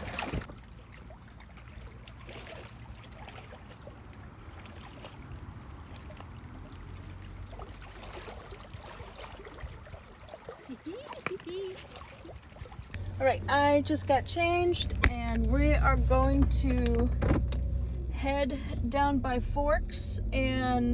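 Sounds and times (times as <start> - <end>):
water lapping against rocky shore: 0.0 - 13.0
low rumble: 12.8 - 20.9.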